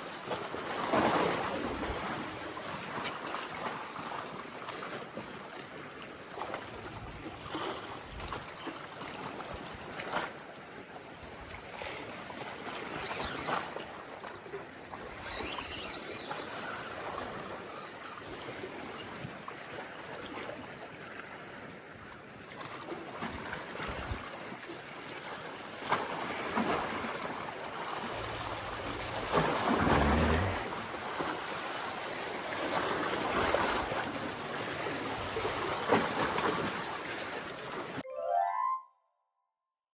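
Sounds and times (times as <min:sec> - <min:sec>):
wind: 0:00.0 - 0:38.0
seawater washing among concrete blocks: 0:25.7 - 0:37.9.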